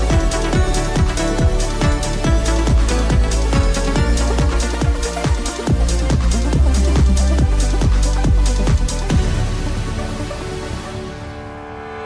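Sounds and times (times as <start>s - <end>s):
hi-hats: 0.0s - 9.5s
kick drum beat: 0.0s - 9.5s
electronic dance music: 0.0s - 11.8s.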